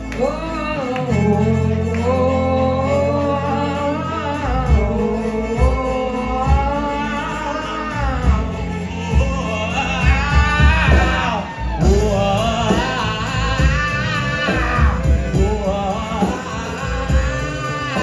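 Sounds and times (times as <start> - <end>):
live rock band playing: 0.0 - 18.0
low drum thumps: 8.3 - 18.0.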